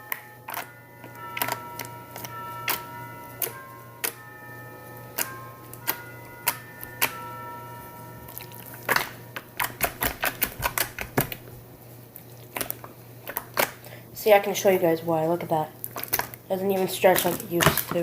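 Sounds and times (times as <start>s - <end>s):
slime clicking and popping: 12.4s - 13.8s, 15.8s - 16.4s.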